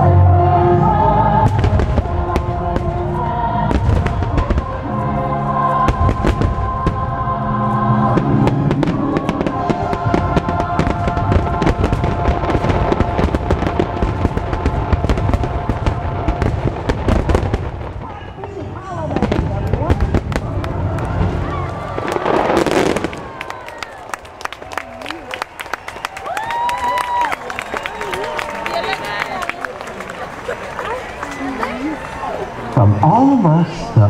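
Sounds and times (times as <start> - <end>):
orchestral and choral music: 0.0 - 17.9.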